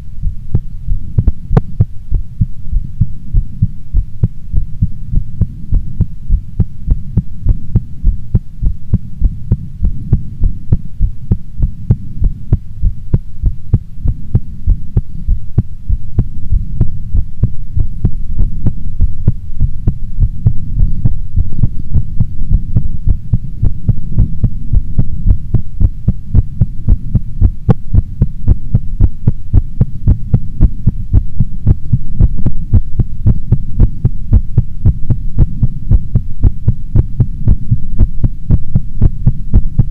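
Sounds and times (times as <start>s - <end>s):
heartbeat thumps: 0.2s - 39.9s.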